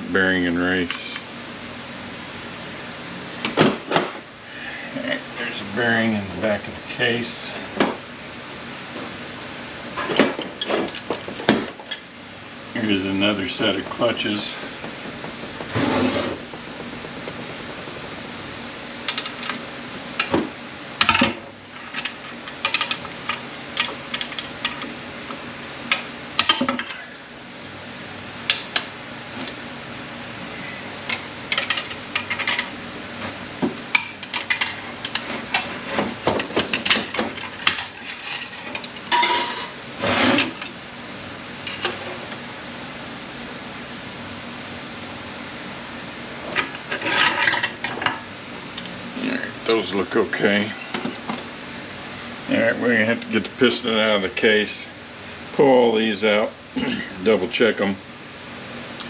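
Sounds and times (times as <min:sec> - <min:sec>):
metal plates clinking and clattering: 0:36.4 - 0:39.8.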